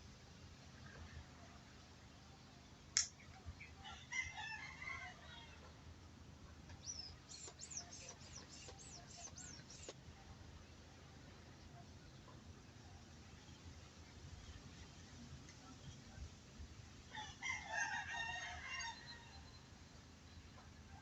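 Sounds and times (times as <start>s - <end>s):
sharp click: 3.0s - 3.3s.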